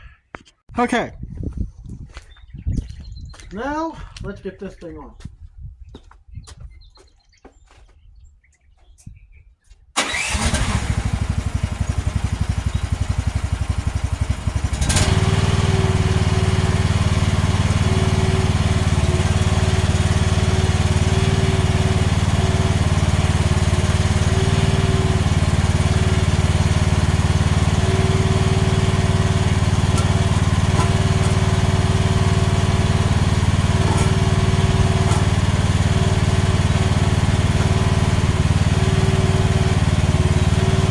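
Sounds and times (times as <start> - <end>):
excavator engine running: 10.0 - 40.9.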